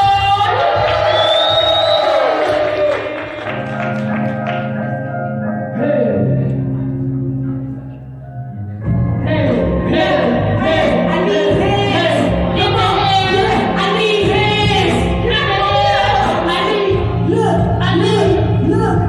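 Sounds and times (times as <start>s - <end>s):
live band music: 8.6s - 19.0s
person singing: 9.2s - 19.0s.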